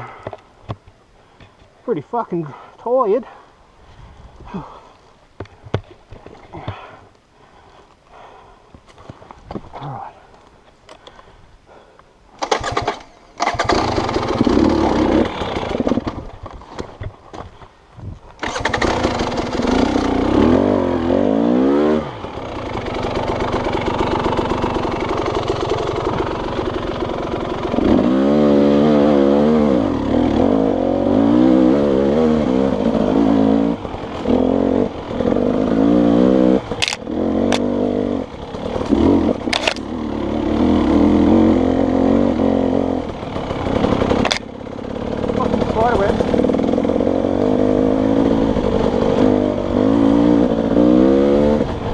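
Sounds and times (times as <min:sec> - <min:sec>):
dirt bike engine revving: 0:12.4 - 0:16.3, 0:18.4 - 0:51.9.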